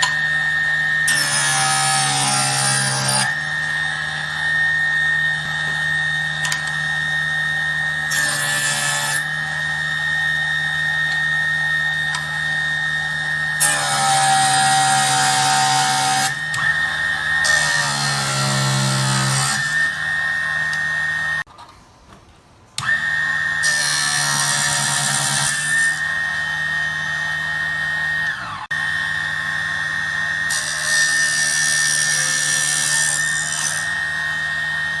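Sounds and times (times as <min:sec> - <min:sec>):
saw rasping through wood: 0:00.0 - 0:21.5, 0:22.8 - 0:35.0
table saw whining: 0:00.0 - 0:21.5, 0:22.8 - 0:35.0.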